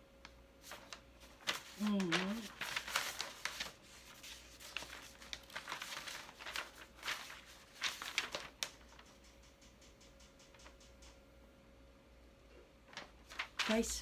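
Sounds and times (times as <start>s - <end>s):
packaging rustling and crinkling: 0.6s - 9.0s, 12.9s - 14.0s.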